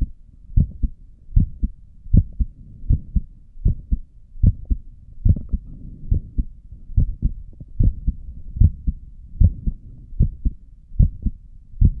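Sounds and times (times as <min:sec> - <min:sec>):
heartbeat through stethoscope: 0:00.0 - 0:12.0.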